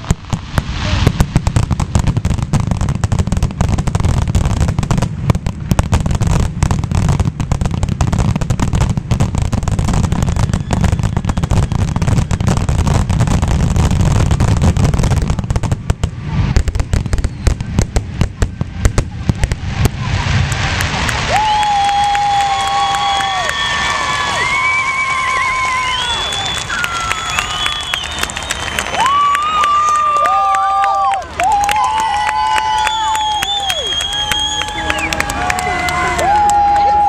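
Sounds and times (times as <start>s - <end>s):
deep rumble: 0.0s - 24.8s.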